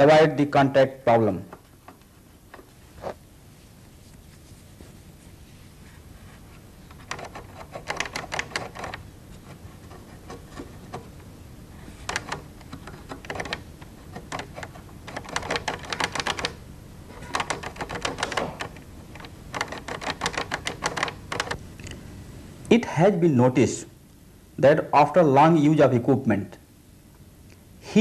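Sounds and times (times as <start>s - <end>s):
lever switches clicking rapidly: 6.9s - 9.0s, 12.0s - 16.6s, 17.2s - 21.6s.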